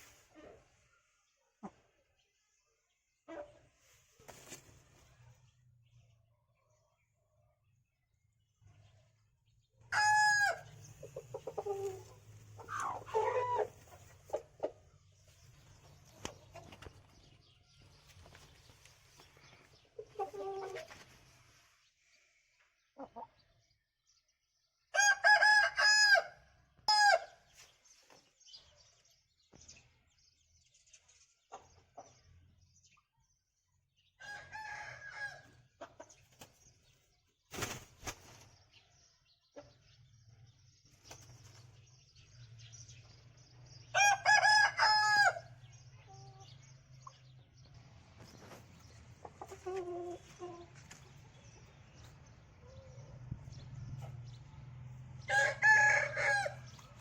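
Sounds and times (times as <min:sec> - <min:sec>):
roosters crowing: 0:09.9 - 0:10.8, 0:44.0 - 0:45.6, 0:55.2 - 0:56.8.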